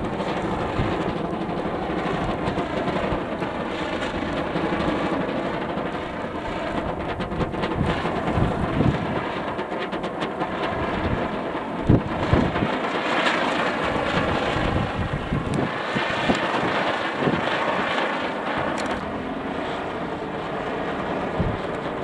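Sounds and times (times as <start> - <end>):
gusty wind on microphone: 0.0 - 22.0
low wind thumps: 5.8 - 17.7, 18.6 - 22.0.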